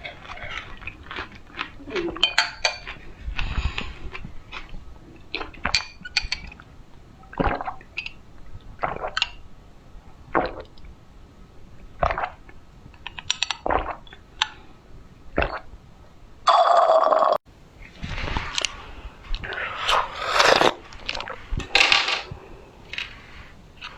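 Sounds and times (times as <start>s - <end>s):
small wet clicks: 0.0s - 9.4s, 12.0s - 14.6s, 17.8s - 23.9s
drink being swallowed: 17.9s - 23.9s.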